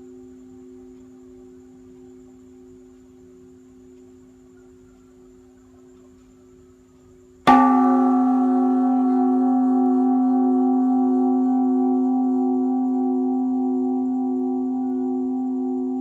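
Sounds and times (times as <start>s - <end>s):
faint low hum: 0.0s - 16.0s
temple bell ringing: 7.5s - 16.0s.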